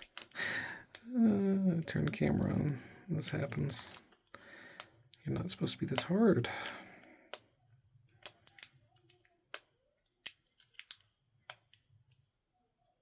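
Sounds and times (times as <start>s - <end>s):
lock pick clicking in padlock: 0.0s - 1.1s, 2.0s - 4.3s, 8.1s - 11.8s.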